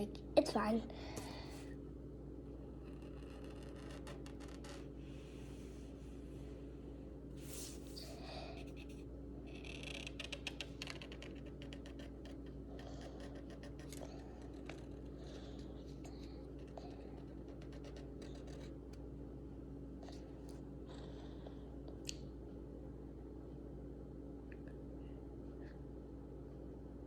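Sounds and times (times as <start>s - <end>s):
steady low hum: 0.0s - 27.0s
pencil scratching on paper: 10.0s - 19.0s.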